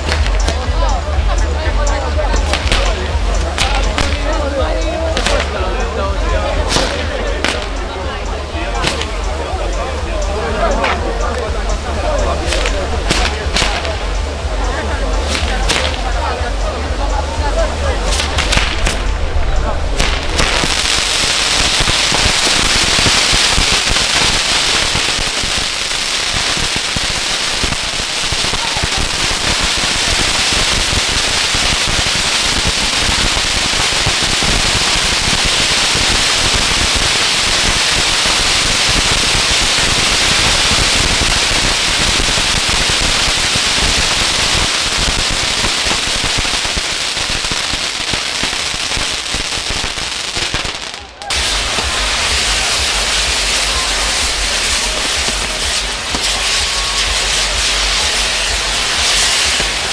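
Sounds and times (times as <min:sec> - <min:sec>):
deep rumble: 0:00.0 - 0:22.0
fireworks crackling and hissing: 0:00.0 - 0:59.9.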